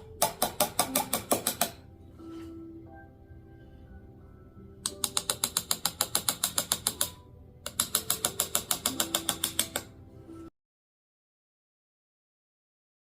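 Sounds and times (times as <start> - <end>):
mallet tapping chisel into wood: 0.0 - 1.8, 4.9 - 9.9
faint background music: 0.0 - 10.5.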